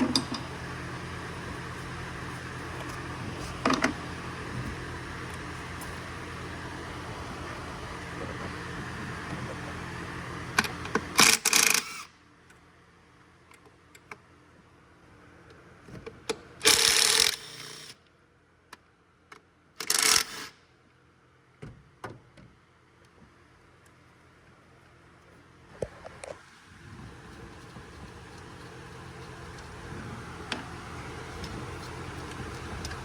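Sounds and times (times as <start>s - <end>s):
steady hum: 0.0s - 11.2s, 25.8s - 33.0s.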